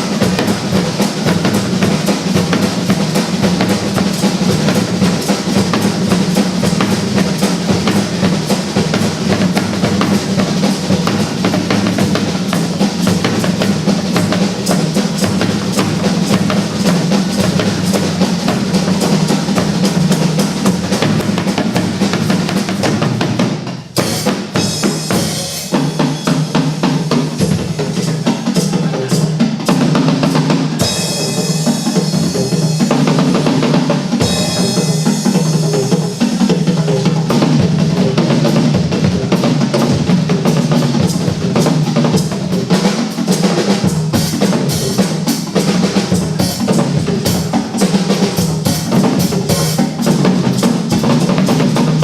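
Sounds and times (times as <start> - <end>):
drum-heavy instrumental music: 0.0 - 52.0.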